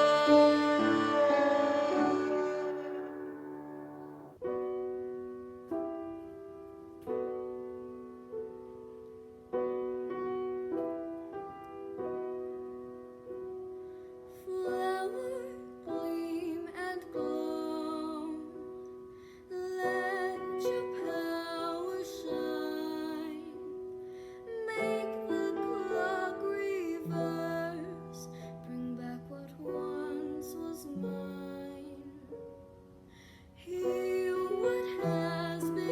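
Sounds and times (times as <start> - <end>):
piano playing slow chords: 0.0 - 35.9
woman singing: 14.3 - 32.6, 33.6 - 35.9.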